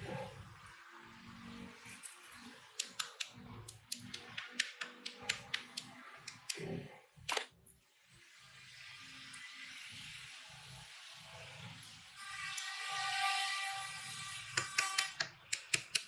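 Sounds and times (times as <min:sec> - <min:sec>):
sharp dry clicks: 0:02.8 - 0:07.5, 0:14.6 - 0:16.0.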